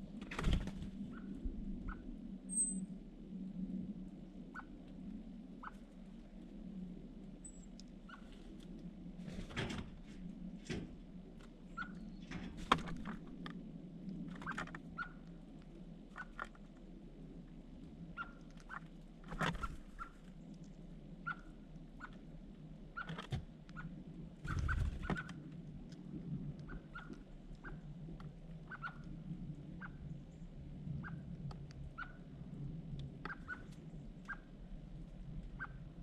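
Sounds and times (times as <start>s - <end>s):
steady low hum: 0.0s - 36.0s
birds chirping: 11.6s - 13.2s, 26.6s - 27.9s, 28.6s - 31.3s, 33.3s - 34.5s.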